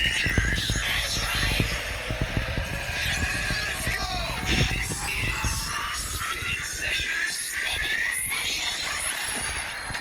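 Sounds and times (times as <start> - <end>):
electronic music from small speaker: 0.0 - 10.0
wind rumble on microphone: 0.0 - 10.0.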